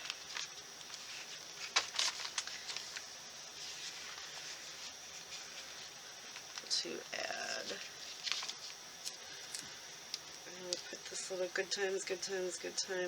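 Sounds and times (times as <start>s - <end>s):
paper rustling: 0.0s - 6.8s, 7.5s - 9.8s.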